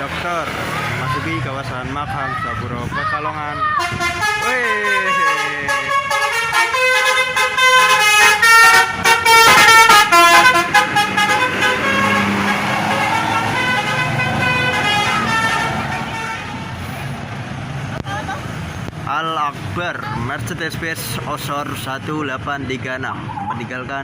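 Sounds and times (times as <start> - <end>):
bus engine: 0.0 - 24.0
street noise: 0.0 - 24.0
musical bus horn melody: 3.8 - 16.7.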